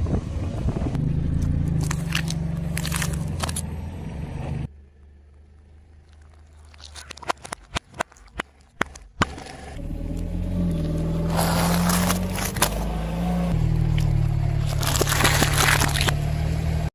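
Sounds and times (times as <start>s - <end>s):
car engine humming: 0.0s - 16.9s
objects cracking under car tyre: 1.4s - 3.7s, 5.3s - 10.3s, 11.2s - 13.0s, 13.7s - 16.4s.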